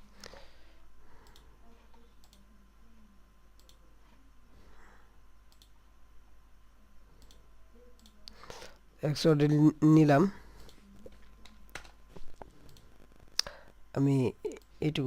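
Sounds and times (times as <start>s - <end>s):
low steady hum: 0.0s - 15.0s
computer mouse clicks: 1.2s - 2.4s, 3.6s - 3.8s, 5.5s - 5.8s, 7.2s - 7.4s, 8.0s - 8.5s, 10.6s - 13.5s.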